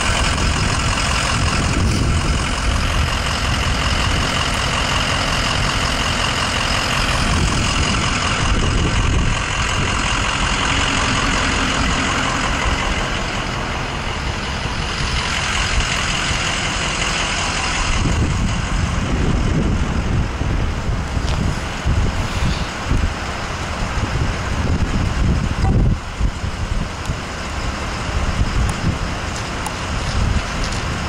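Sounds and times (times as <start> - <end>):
diesel engine idling: 0.0 - 31.0.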